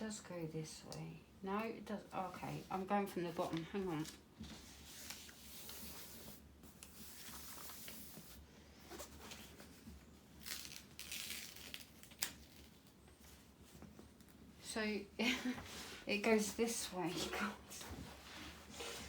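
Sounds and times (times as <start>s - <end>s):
plastic film peeling crackle: 10.3s - 13.2s.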